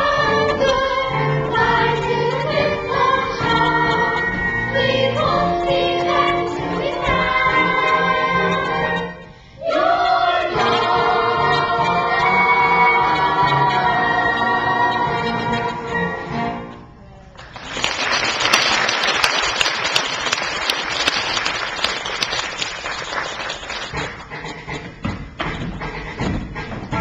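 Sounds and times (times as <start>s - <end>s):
musical accompaniment: 0.0s - 17.2s, 22.0s - 27.0s
audience applause: 17.4s - 24.2s.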